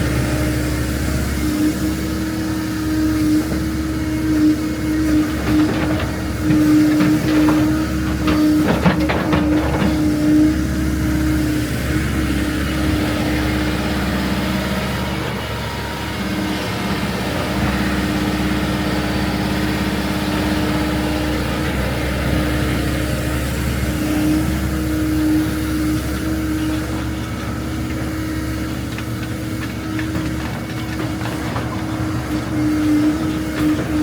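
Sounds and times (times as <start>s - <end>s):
diesel engine running: 0.0s - 34.0s.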